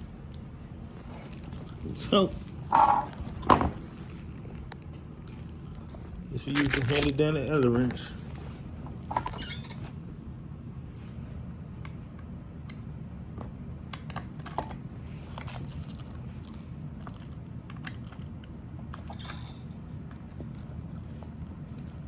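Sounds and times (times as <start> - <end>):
steady low hum: 0.0 - 22.0
clatter of tools and screws: 14.1 - 18.3.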